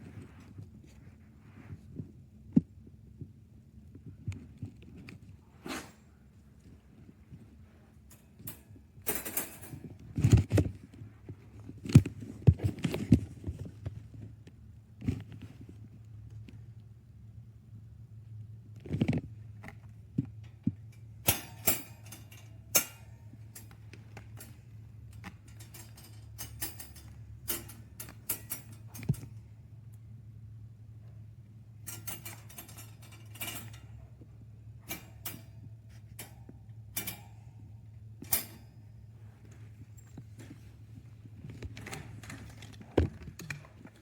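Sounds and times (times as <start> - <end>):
wire dog crate rattling: 8.1 - 10.5, 20.9 - 29.4, 31.8 - 34.2, 34.8 - 37.6, 38.2 - 38.9, 41.7 - 44.0.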